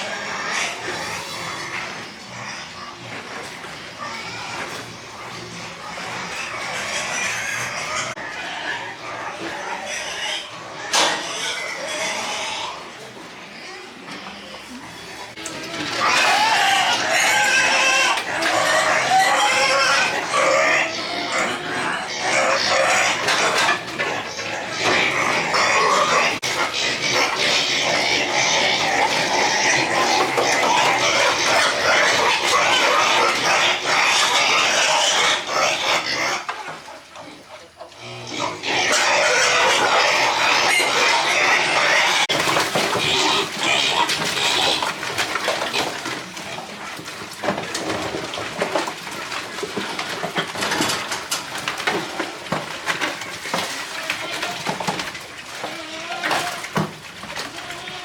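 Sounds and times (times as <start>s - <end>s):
piglets squealing: 15.9s - 36.5s, 38.0s - 42.3s, 55.6s - 56.8s.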